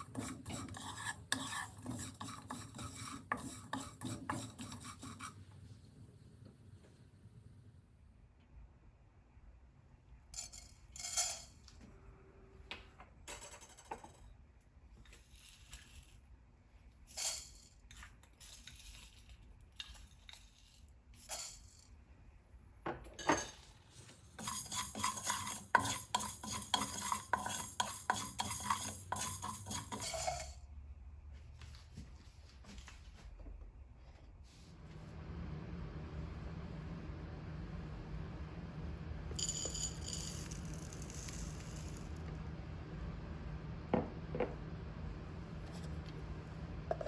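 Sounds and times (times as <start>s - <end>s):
spoon stirring in a pan: 0.0s - 5.4s, 24.4s - 30.6s
utensils clinking on pots: 24.4s - 30.6s.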